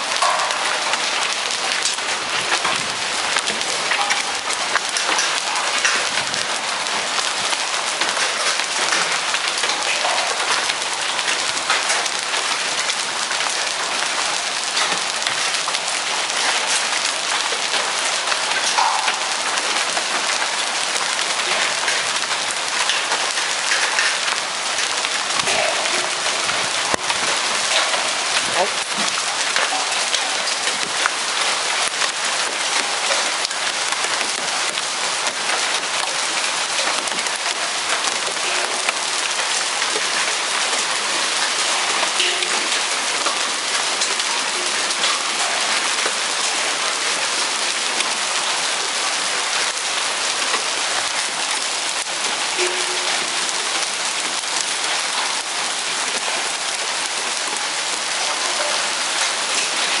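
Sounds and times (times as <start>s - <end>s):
hail and heavy rain: 0.0s - 60.0s.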